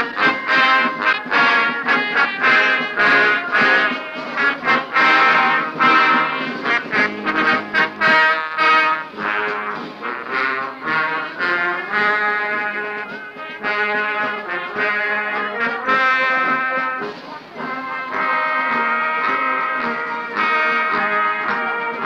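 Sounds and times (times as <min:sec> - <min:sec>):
brass instruments playing: 0:00.0 - 0:22.0.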